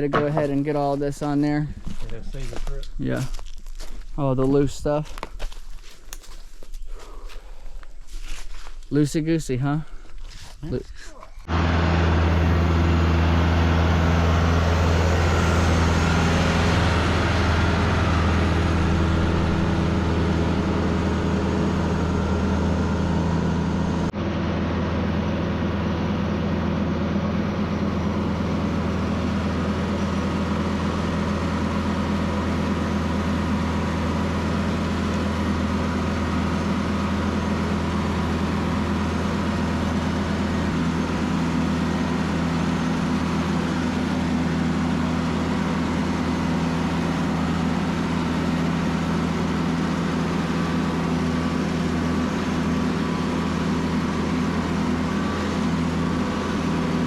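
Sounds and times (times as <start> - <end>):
vehicle engine droning: 11.4 - 57.0.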